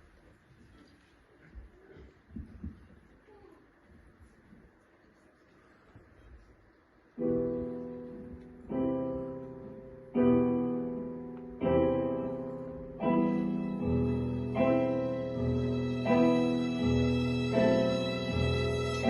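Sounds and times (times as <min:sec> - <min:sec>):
slow piano chords: 0:07.2 - 0:19.0.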